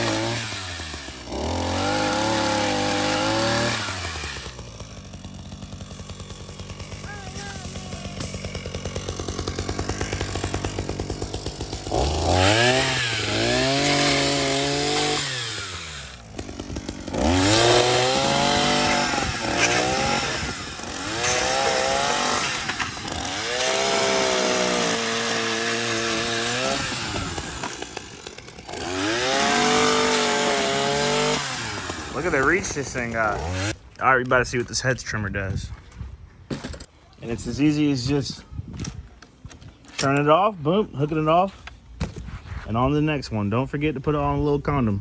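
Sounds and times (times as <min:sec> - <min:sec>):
pole saw engine revving: 0:00.0 - 0:33.8
saw chain cutting branches: 0:00.0 - 0:35.4.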